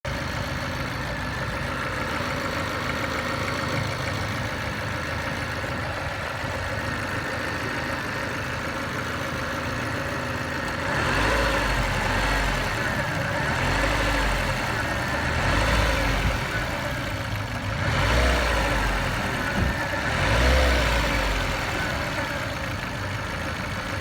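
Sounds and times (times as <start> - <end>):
car engine idling with a knock: 18.5 - 20.5.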